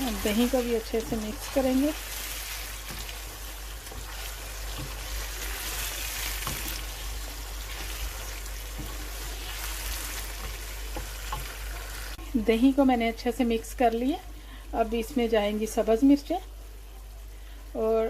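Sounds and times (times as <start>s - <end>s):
stirring in a pot: 0.0s - 12.2s
food sizzling in oil: 0.0s - 14.1s.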